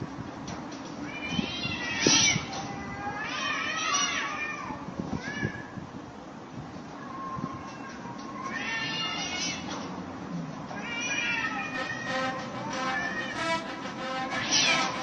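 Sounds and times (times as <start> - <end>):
cats meowing and yowling: 1.1 - 5.8, 7.0 - 9.7, 10.7 - 11.7.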